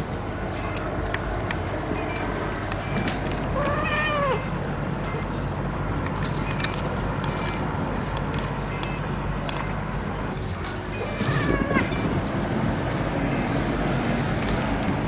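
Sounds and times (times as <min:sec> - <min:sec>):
cat meowing: 0:03.4 - 0:05.2, 0:10.9 - 0:12.3.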